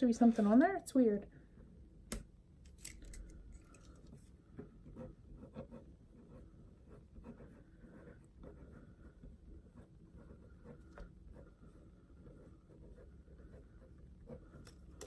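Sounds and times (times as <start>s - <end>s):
pencil scratching on paper: 4.8s - 15.0s.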